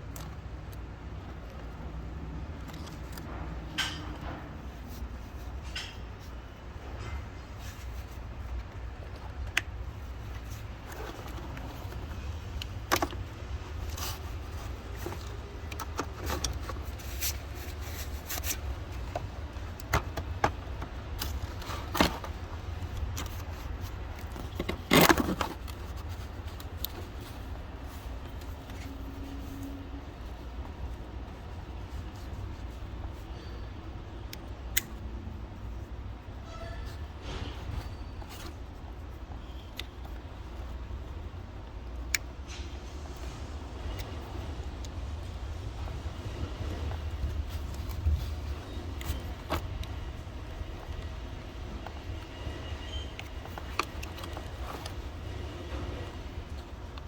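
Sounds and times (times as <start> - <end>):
tools and car parts clinking: 2.6 - 4.8, 5.5 - 8.6.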